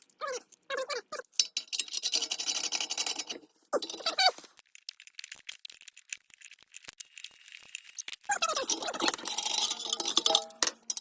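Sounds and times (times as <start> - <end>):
hand tools rattling clicks: 1.3 - 4.3, 8.5 - 11.0.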